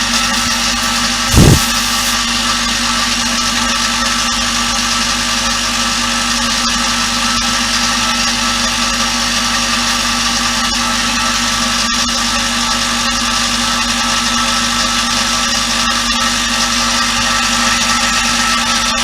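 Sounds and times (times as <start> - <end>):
ultrasonic cleaner buzzing: 0.0 - 2.5.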